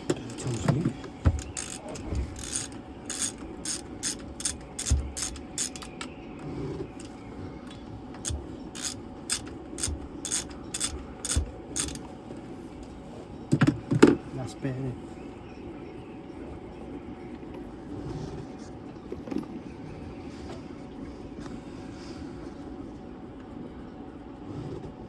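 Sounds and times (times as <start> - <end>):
socket ratchet clicking: 1.3 - 6.1, 8.2 - 12.0.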